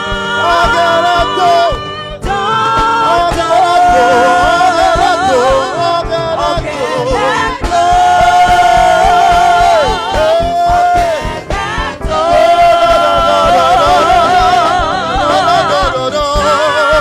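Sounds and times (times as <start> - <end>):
gospel choir singing: 0.0 - 17.0
instrumental accompaniment: 0.0 - 17.0.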